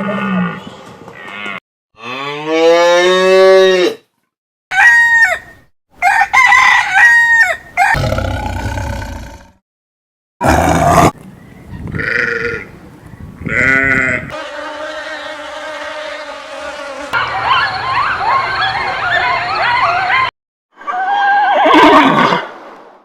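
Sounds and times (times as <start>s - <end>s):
animal grunt: 7.9s - 9.6s, 10.4s - 11.2s.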